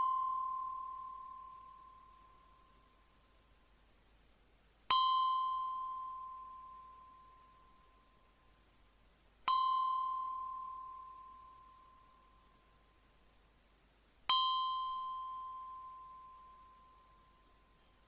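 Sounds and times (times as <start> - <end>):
ice cream bell ding: 0.0 - 1.8.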